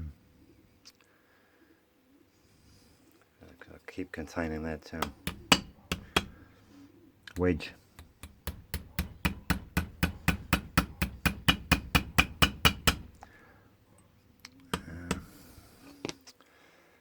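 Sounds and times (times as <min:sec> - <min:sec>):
rapid hammer taps on steel: 0:05.0 - 0:06.4, 0:07.4 - 0:13.3, 0:14.7 - 0:15.4
single knocks: 0:05.0 - 0:06.4, 0:07.4 - 0:13.2.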